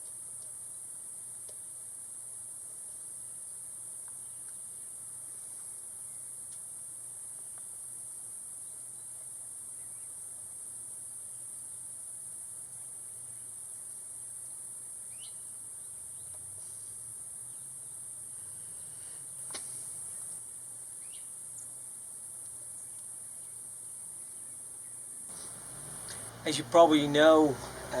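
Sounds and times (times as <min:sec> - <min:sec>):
faint low hum: 0:21.5 - 0:28.0
high-pitched hiss: 0:22.7 - 0:28.0.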